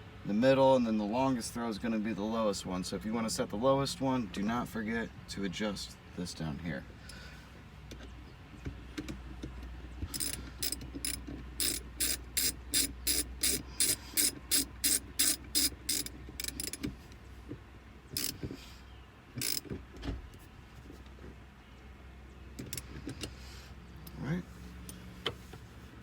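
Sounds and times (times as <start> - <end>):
shifter lever clicking: 9.0 - 17.2, 18.1 - 18.6, 19.4 - 20.4, 22.6 - 23.4.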